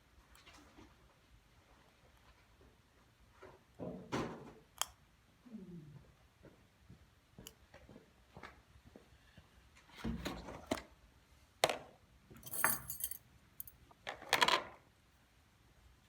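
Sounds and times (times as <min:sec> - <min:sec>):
cooking gear knocking and clinking: 0:12.4 - 0:13.7.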